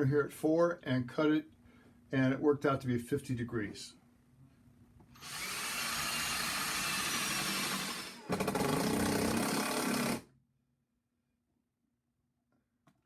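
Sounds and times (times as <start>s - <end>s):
power saw cutting wood: 5.2s - 10.2s.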